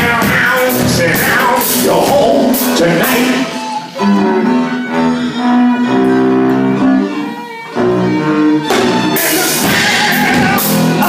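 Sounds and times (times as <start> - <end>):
guitar: 0.0 - 11.0
rock band playing: 0.0 - 11.0
bowed strings: 1.8 - 10.6.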